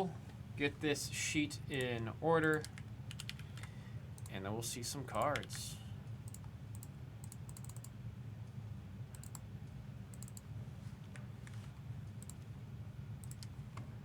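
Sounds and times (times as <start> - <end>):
steady low hum: 0.0 - 14.0
computer keyboard clicks: 2.6 - 4.3, 6.3 - 7.9, 9.1 - 9.4, 10.1 - 10.4, 12.2 - 12.4, 13.2 - 13.9.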